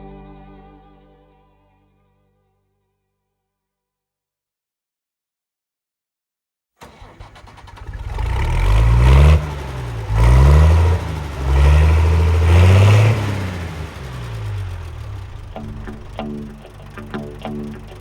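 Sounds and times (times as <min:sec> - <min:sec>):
vehicle engine accelerating: 0:06.8 - 0:18.0.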